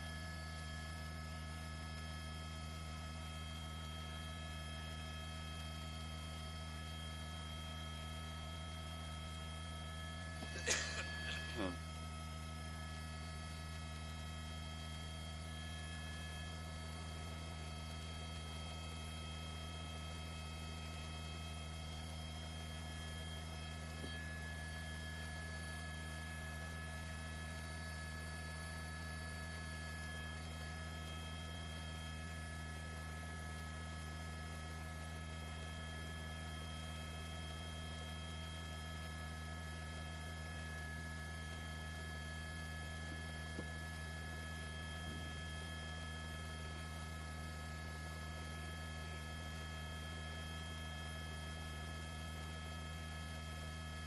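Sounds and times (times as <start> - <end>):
steady hum: 10.2 - 19.2, 19.9 - 32.4, 40.0 - 50.6.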